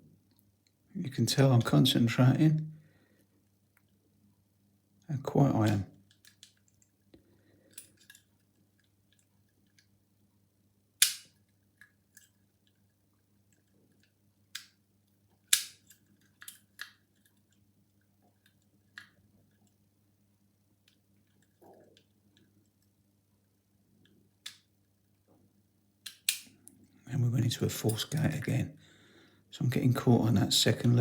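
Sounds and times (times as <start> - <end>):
lock picks clicking in a lock: 7.7 - 8.3, 11.0 - 12.4, 15.5 - 17.6, 26.0 - 26.5
sharp snaps of a lock: 11.0 - 11.4, 15.5 - 17.0, 26.0 - 26.6.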